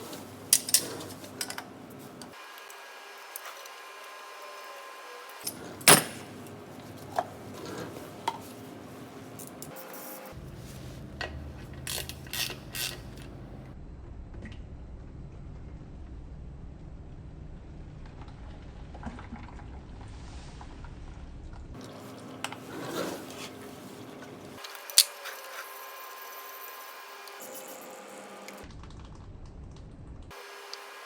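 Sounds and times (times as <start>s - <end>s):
metallic clicks of tools: 11.2s - 13.4s.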